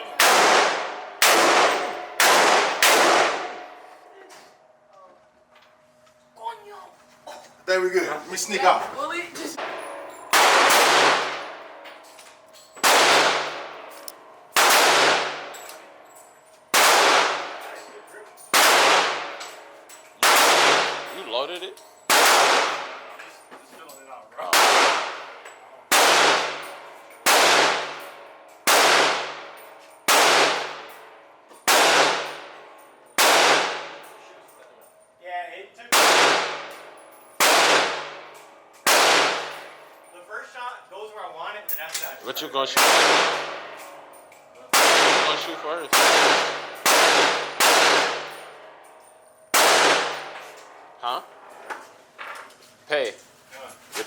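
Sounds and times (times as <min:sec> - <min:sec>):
gunshots with echoing ring: 0:00.0 - 0:03.9, 0:09.6 - 0:11.8, 0:12.8 - 0:16.0, 0:16.7 - 0:17.8, 0:18.5 - 0:21.2, 0:22.1 - 0:23.2, 0:24.5 - 0:34.2, 0:35.9 - 0:39.9, 0:42.7 - 0:44.1, 0:44.7 - 0:48.8, 0:49.5 - 0:51.5.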